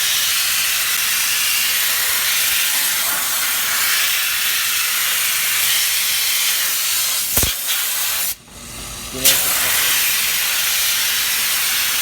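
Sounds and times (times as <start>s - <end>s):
loud steady hiss: 0.0s - 12.0s.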